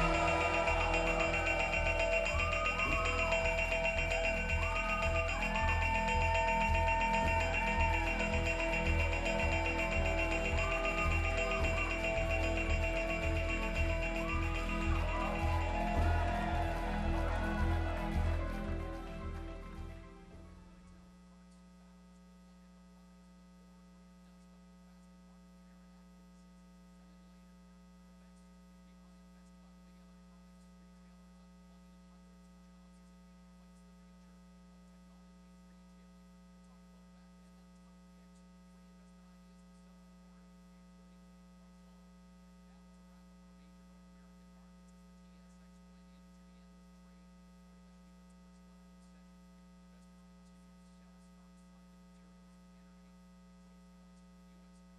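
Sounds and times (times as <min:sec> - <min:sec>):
music: 0:00.0 - 0:21.4
faint electrical hum: 0:20.1 - 0:54.9.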